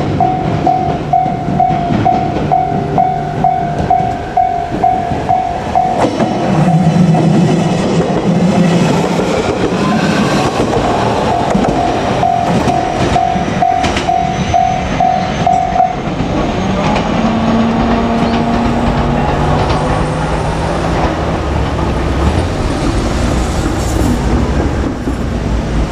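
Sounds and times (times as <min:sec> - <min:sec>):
train wheels clacking over rail joints: 0:00.0 - 0:25.9
level crossing bell ringing: 0:00.2 - 0:07.2, 0:11.7 - 0:16.1.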